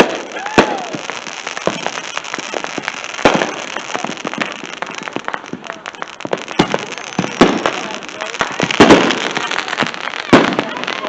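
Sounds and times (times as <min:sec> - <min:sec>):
loud firework bang: 0:00.0 - 0:01.0, 0:01.6 - 0:10.8
fireworks popping and crackling: 0:00.0 - 0:11.0.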